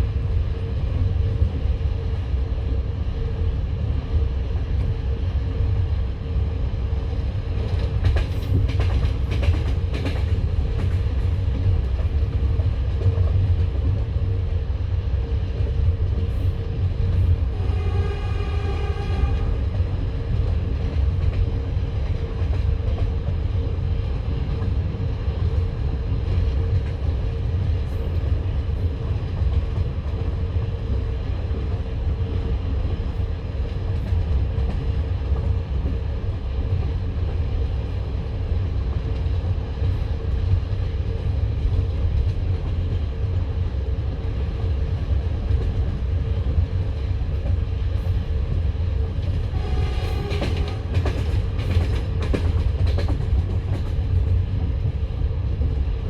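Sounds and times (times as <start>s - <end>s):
train wheels rumbling on track: 0.0s - 56.0s.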